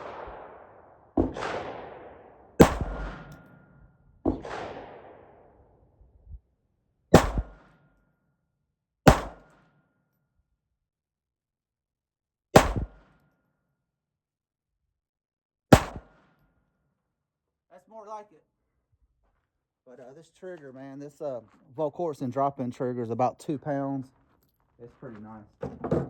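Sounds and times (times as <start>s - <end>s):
suppressed pistol shots: 0.0s - 3.6s, 4.2s - 5.6s, 7.1s - 7.7s, 9.1s - 9.5s, 12.6s - 13.0s, 15.7s - 16.2s.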